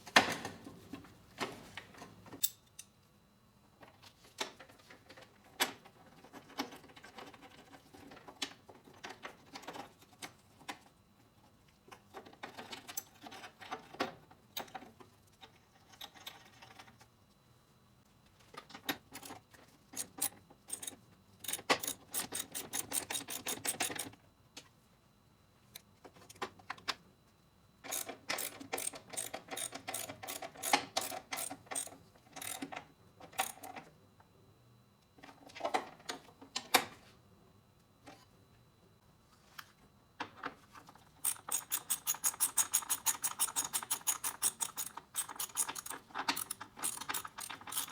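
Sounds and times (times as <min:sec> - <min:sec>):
ratchet wrench clicking: 0:27.9 - 0:32.6, 0:41.2 - 0:47.9.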